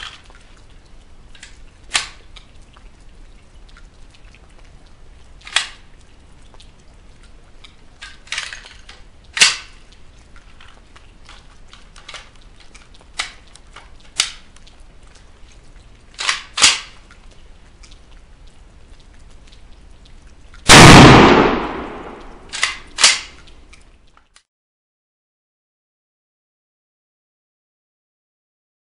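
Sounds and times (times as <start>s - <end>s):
rifle shot with long echo: 20.7s - 23.3s
sharp gunshot cracks: 20.7s - 23.3s.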